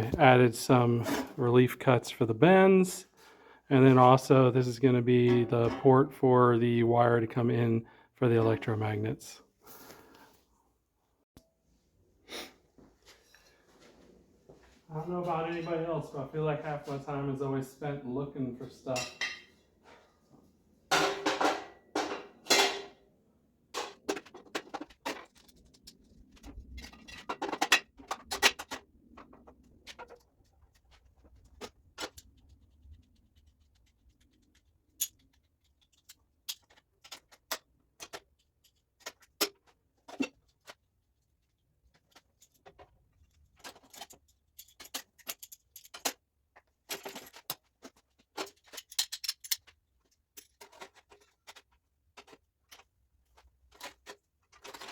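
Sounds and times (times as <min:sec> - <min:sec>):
metal tools clinking and rattling: 0:18.9 - 0:19.6, 0:20.9 - 0:23.0, 0:42.0 - 0:46.2, 0:46.9 - 0:52.9
tools clattering: 0:20.9 - 0:23.0, 0:23.7 - 0:31.0, 0:41.9 - 0:54.9.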